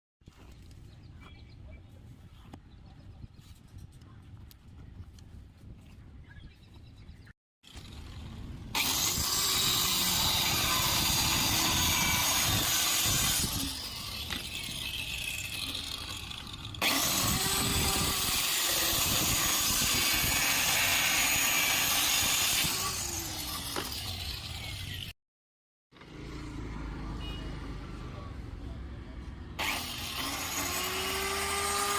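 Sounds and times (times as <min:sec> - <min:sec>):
circular saw cutting plywood: 0:07.6 - 0:25.1, 0:29.6 - 0:31.9.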